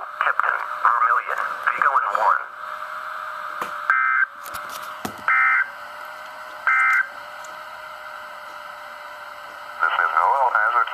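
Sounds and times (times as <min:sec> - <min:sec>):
radio hiss: 0:00.0 - 0:02.5, 0:09.8 - 0:10.9.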